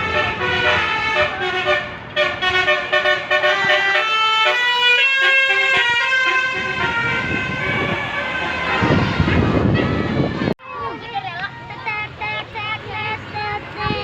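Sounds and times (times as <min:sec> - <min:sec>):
musical bus horn playing a tune: 0:00.0 - 0:10.6.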